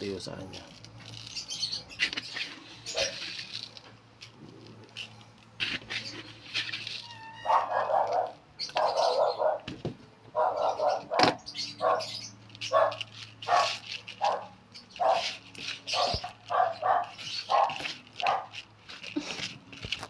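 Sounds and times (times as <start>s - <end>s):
dog barking: 7.4s - 9.7s, 10.4s - 15.3s, 15.9s - 18.5s.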